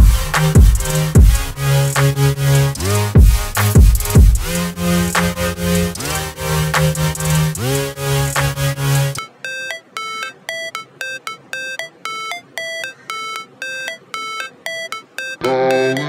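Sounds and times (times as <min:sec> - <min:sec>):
bass-heavy beat: 0:00.0 - 0:09.2.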